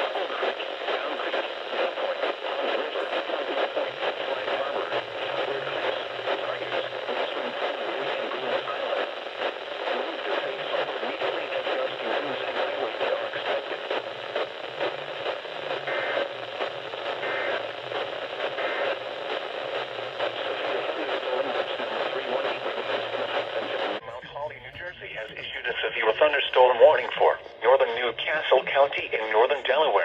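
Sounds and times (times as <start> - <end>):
radio static hiss: 0.0 - 30.0.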